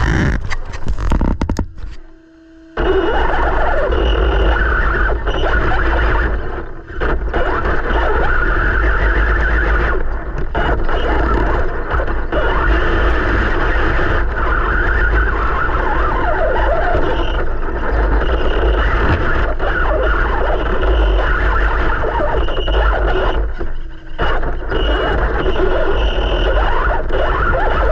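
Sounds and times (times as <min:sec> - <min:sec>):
toy car electric motor whining: 0:00.0 - 0:01.4
steady low rumble: 0:00.0 - 0:02.2.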